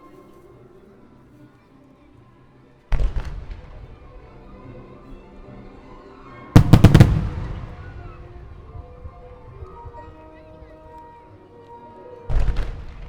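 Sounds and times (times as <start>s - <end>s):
background music: 0.0s - 13.0s
fireworks bursting: 6.6s - 9.2s.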